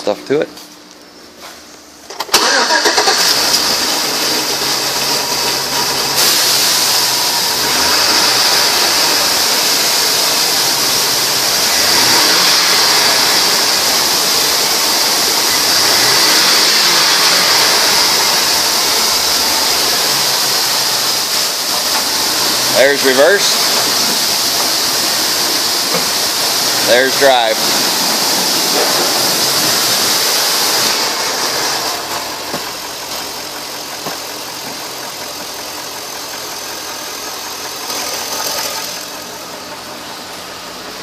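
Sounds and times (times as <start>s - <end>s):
car engine cranking and idling: 0.3s - 41.0s
hiss: 6.1s - 32.0s.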